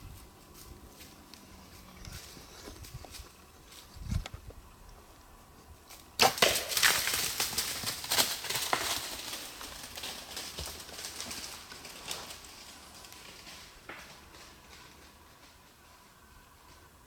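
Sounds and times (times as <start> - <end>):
deer crashing through dry leaves: 5.9 - 15.6.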